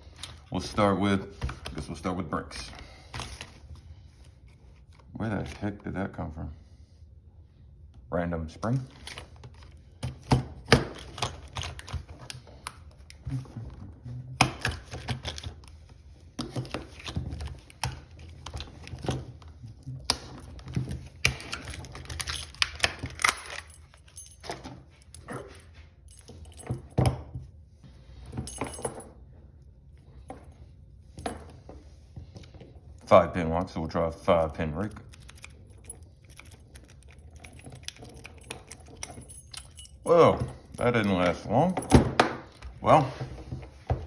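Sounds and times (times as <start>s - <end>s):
keys jingling: 20.4s - 27.1s, 28.3s - 29.2s, 34.4s - 42.8s.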